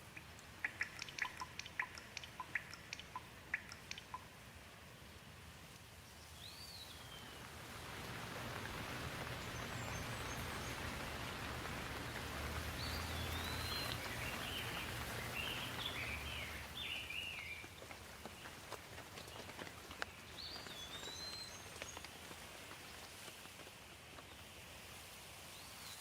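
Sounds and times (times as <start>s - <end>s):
small birds chirping: 0.0s - 4.3s, 6.0s - 24.7s
steady rain hiss: 0.0s - 26.0s.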